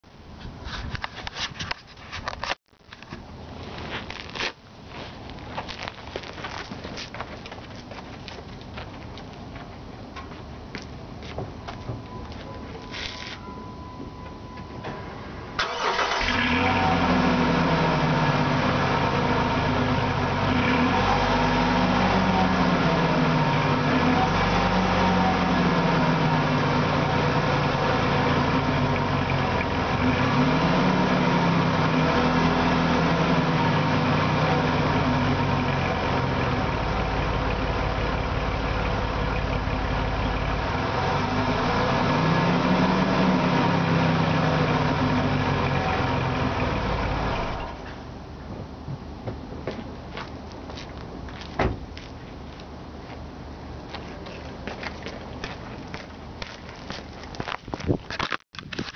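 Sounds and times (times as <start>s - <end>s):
car engine starting and idling: 13.2s - 47.9s
engine revving: 15.6s - 47.7s.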